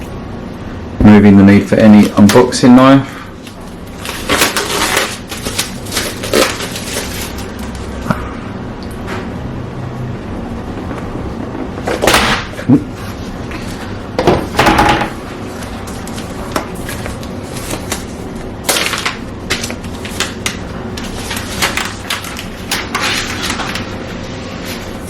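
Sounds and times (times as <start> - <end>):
cardboard packaging rustling and scraping: 3.4 - 8.0, 15.1 - 25.0.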